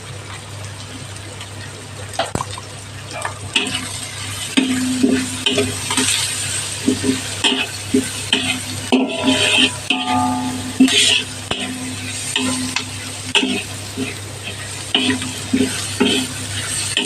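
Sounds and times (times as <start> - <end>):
food sizzling in hot oil: 0.1 - 17.0
utensil scraping a pan: 6.8 - 17.0
steady low hum: 8.3 - 17.0.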